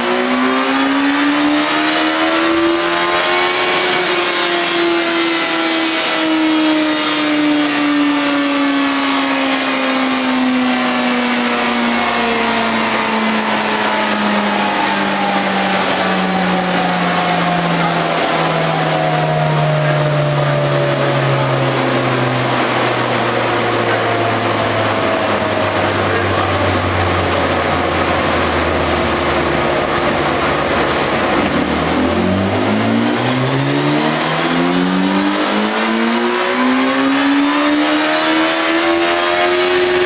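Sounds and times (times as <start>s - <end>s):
motorcycle engine winding down: 0.0s - 40.0s
rushing noise: 11.5s - 40.0s.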